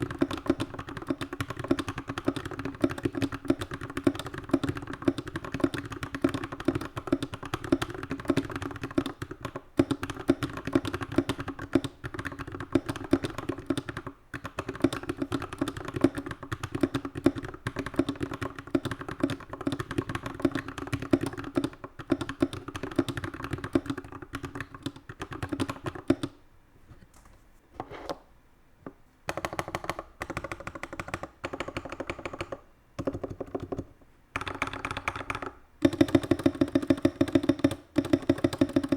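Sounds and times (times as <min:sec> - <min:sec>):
keyboard typing clatter: 0:00.0 - 0:26.4, 0:29.3 - 0:38.9.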